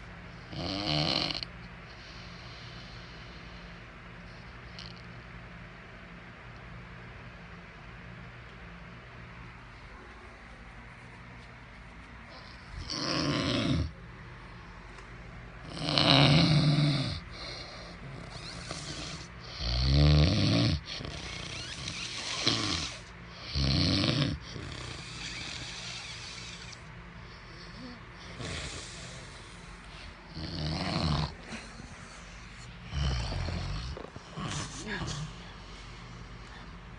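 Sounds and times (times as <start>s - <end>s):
man snoring heavily: 0.5s - 3.6s, 12.3s - 14.0s, 15.6s - 35.4s
faint breaths: 1.7s - 5.1s, 9.6s - 19.8s, 24.4s - 36.9s.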